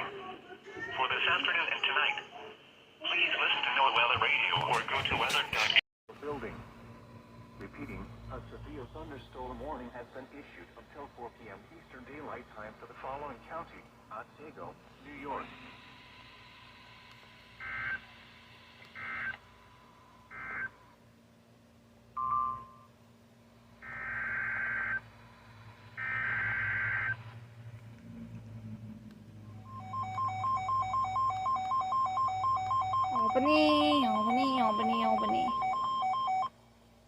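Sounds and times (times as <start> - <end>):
pulsing two-tone alert tone: 29.6 - 36.5
digital data bursts: 31.9 - 35.8.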